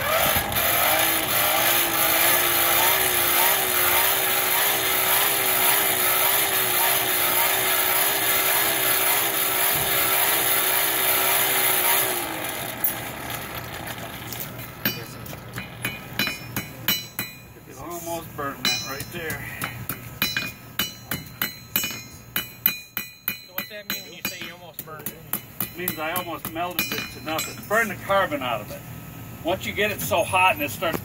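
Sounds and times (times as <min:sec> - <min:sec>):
electric forge blower running: 0:00.0 - 0:20.4.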